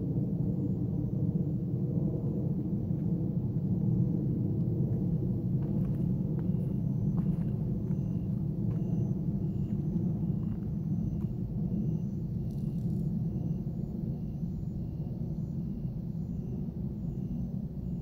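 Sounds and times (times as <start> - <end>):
low outdoor rumble: 0.0 - 18.0
high-pitched insect chirps: 8.0 - 18.0.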